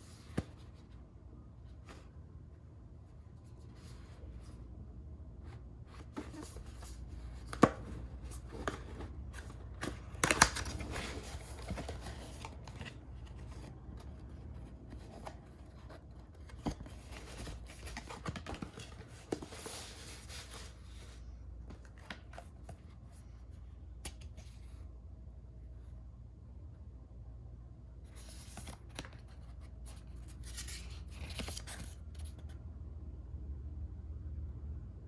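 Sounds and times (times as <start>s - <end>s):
cardboard and paper rustling: 0.0s - 1.0s, 5.4s - 24.8s, 28.0s - 32.5s.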